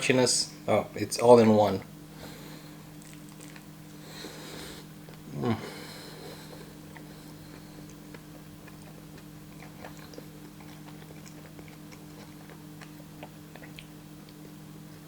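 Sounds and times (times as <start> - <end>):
low electrical hum: 0.0 - 15.0
chewing crunchy food: 2.8 - 5.3, 6.2 - 15.0.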